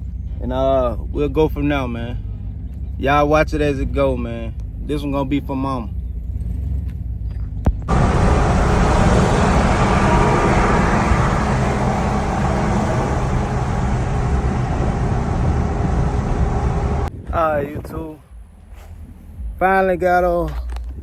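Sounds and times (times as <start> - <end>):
road and wind noise: 0.0 - 19.6
truck engine rumble: 5.9 - 17.1.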